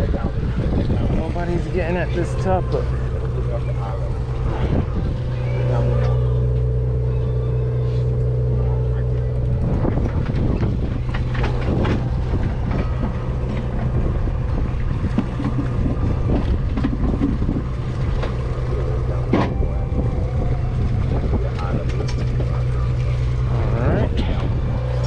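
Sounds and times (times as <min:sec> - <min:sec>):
boat engine humming: 0:00.0 - 0:25.0
wind on microphone: 0:00.0 - 0:25.0
knocks and clatter: 0:09.4 - 0:18.5.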